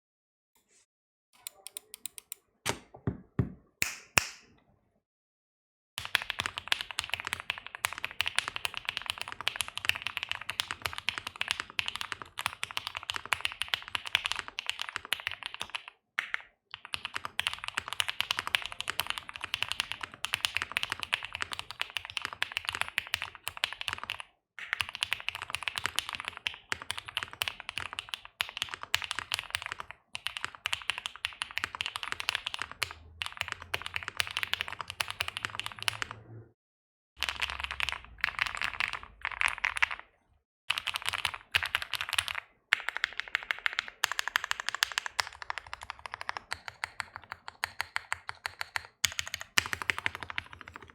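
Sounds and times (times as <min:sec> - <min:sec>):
mechanical keyboard typing: 0:01.4 - 0:02.9, 0:06.0 - 0:36.2, 0:37.2 - 0:40.1, 0:40.7 - 0:50.9
knocks: 0:02.7 - 0:03.7.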